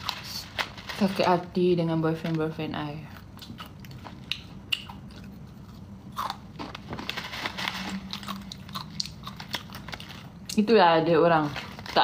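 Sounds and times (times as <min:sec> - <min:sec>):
chewing and crunching food: 0:03.0 - 0:10.7.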